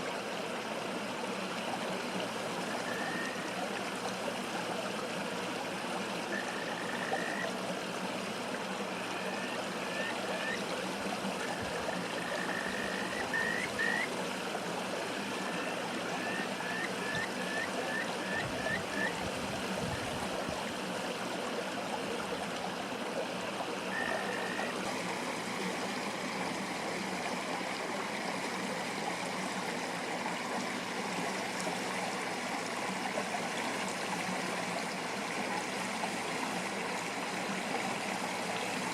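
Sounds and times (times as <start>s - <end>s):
stream rushing: 0.0s - 38.9s
frogs whistling calls: 2.8s - 3.5s, 6.3s - 7.5s, 9.0s - 10.6s, 11.5s - 14.1s, 15.4s - 19.2s, 23.9s - 24.8s.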